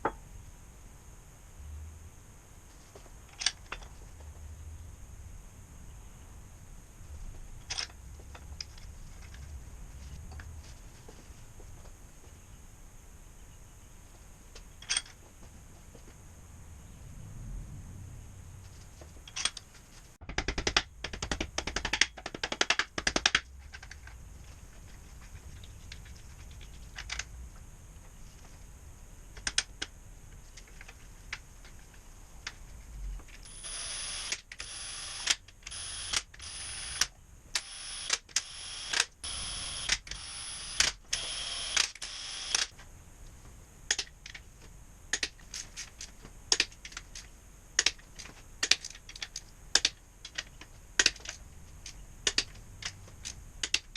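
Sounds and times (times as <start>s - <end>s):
steady hiss: 24.1s - 53.6s.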